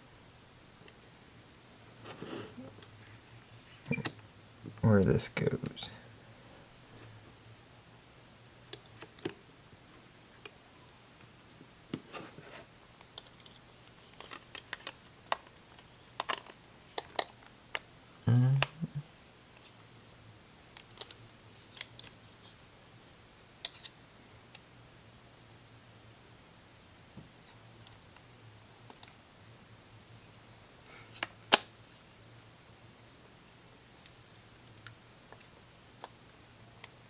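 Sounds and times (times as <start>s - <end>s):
plastic parts clicking and tapping: 13.1s - 17.3s.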